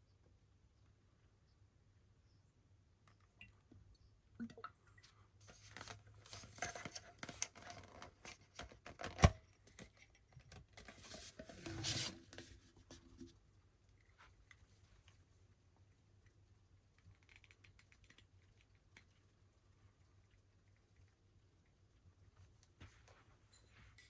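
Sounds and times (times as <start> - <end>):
box scraping and rustling: 11.0 - 12.3.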